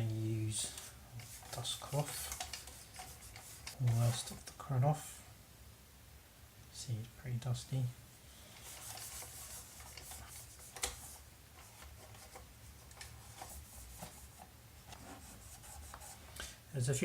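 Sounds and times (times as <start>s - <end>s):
cloth wiping toy car: 0.1s - 5.3s, 8.4s - 16.3s.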